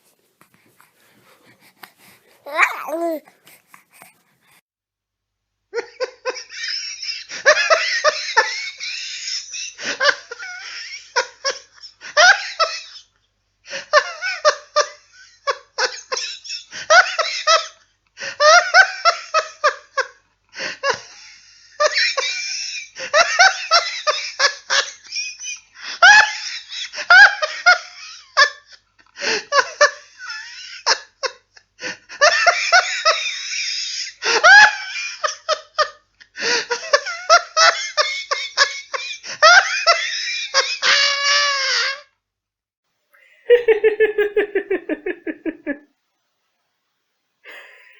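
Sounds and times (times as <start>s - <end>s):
people laughing: 43.4s - 45.8s.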